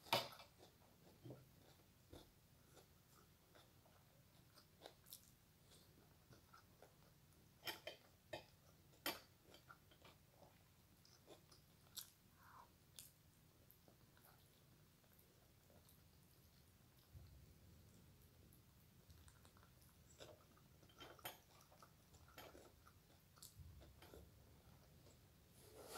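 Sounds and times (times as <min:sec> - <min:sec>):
person chewing food: 0:00.0 - 0:25.9.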